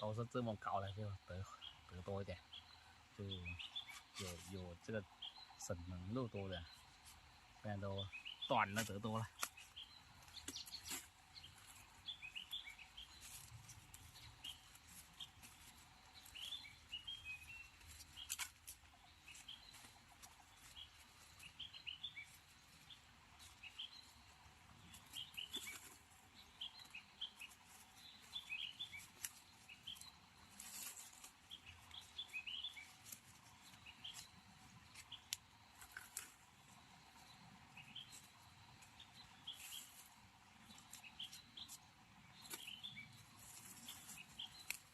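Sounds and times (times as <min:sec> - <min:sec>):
small birds chirping: 0:00.0 - 0:44.9
soft rustles and clicks: 0:24.9 - 0:36.4, 0:38.0 - 0:44.9.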